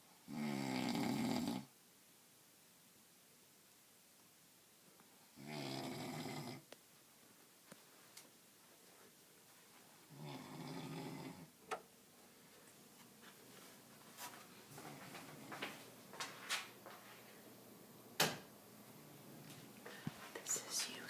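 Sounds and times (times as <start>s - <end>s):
fluttering snore: 10.1s - 11.5s.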